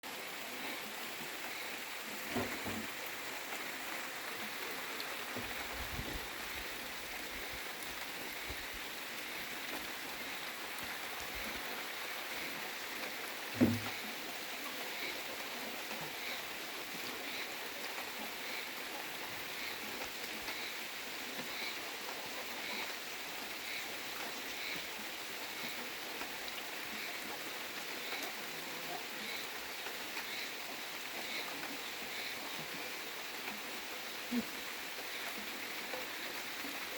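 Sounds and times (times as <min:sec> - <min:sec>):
steady rain falling: 0:00.0 - 0:36.9
sharp thump: 0:13.6 - 0:13.9.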